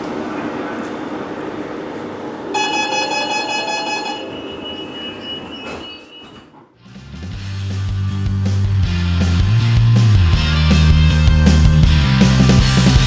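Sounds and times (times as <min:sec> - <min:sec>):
high multi-tone sound: 0:02.5 - 0:06.3
music: 0:06.8 - 0:13.0.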